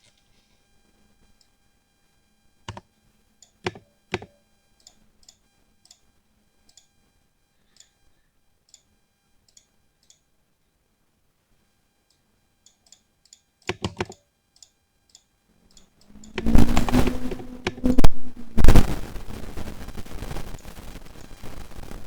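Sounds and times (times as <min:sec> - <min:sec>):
mechanical keyboard keystrokes: 0:13.7 - 0:14.2.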